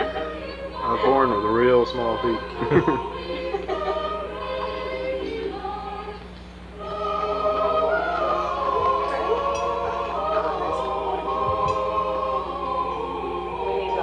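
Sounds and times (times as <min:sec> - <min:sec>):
choir singing a carol: 0:00.0 - 0:14.0.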